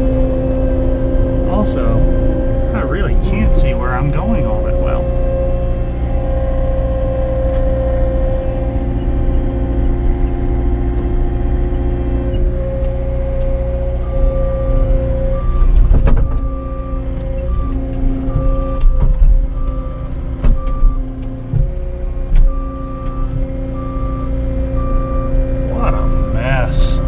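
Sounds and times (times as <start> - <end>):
diesel engine running: 0.0 - 27.0
backup alarm beeping: 1.7 - 27.0
heavy clunk: 15.4 - 23.5.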